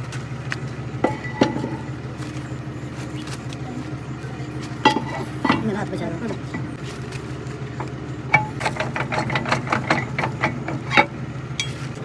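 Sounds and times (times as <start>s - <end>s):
engine hum: 0.0s - 12.0s
sharp metal knocks: 7.8s - 12.0s.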